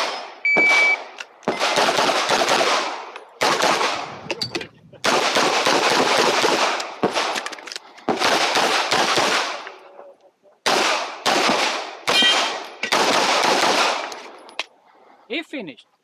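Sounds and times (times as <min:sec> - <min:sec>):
loud pistol shots: 0:00.0 - 0:04.2, 0:05.0 - 0:07.4, 0:08.1 - 0:09.6, 0:10.6 - 0:14.1.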